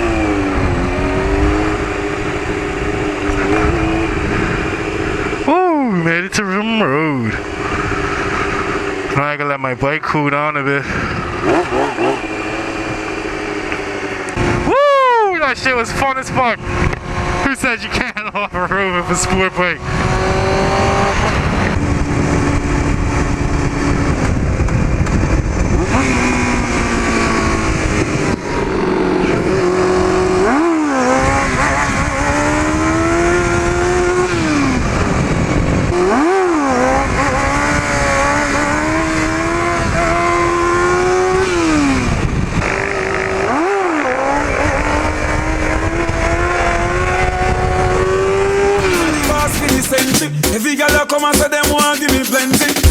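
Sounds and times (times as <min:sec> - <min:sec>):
wind noise on microphone: 0:00.0 - 0:05.4, 0:16.2 - 0:17.5, 0:19.8 - 0:43.5, 0:44.4 - 0:48.9
motorcycle engine revving: 0:00.0 - 0:09.4, 0:10.6 - 0:14.8, 0:15.4 - 0:50.8.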